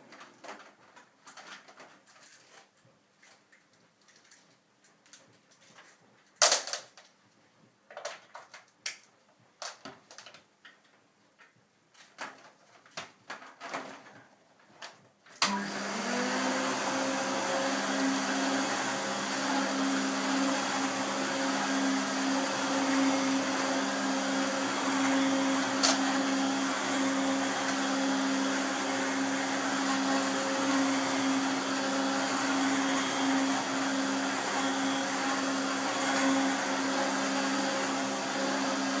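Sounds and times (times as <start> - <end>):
vacuum cleaner motor humming: 15.4 - 39.0.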